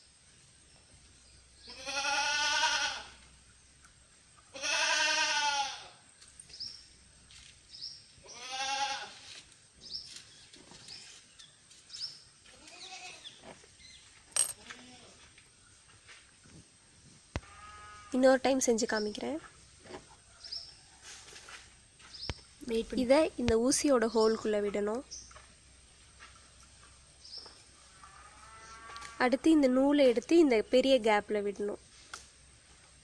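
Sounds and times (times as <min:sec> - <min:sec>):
goat bleating: 0:01.7 - 0:03.2, 0:04.5 - 0:06.0, 0:08.2 - 0:09.2, 0:12.5 - 0:13.2.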